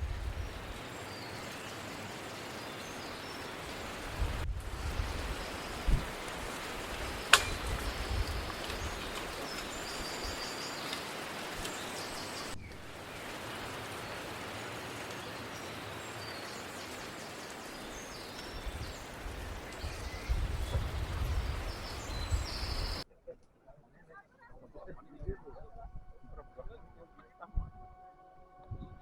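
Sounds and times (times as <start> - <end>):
wind rumble on microphone: 0.0 - 0.9, 3.7 - 10.6, 17.8 - 23.0, 24.8 - 29.0
steady hiss: 0.0 - 23.0.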